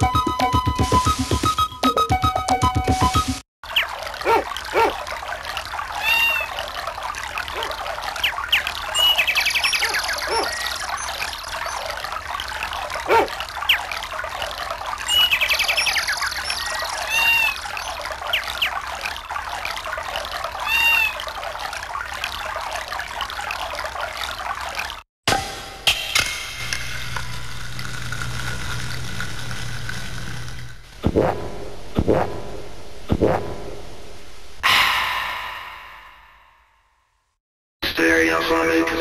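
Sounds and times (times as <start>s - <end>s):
running water: 0.0s - 25.0s, 26.0s - 31.0s
birds chirping: 7.4s - 14.0s, 14.8s - 19.2s.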